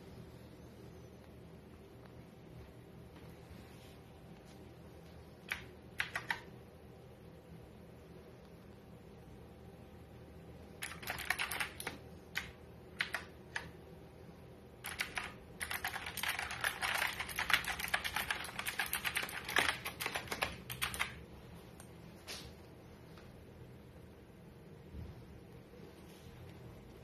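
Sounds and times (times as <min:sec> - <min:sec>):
mechanical keyboard key clicks: 0:05.5 - 0:06.5.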